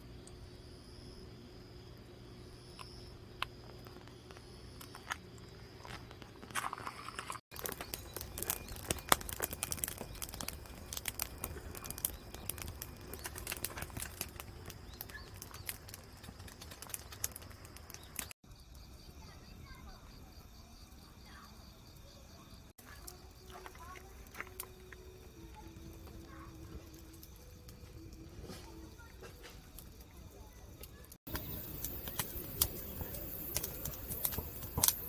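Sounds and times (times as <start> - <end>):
firewood crackling and popping: 2.8 - 18.4, 22.8 - 35.0.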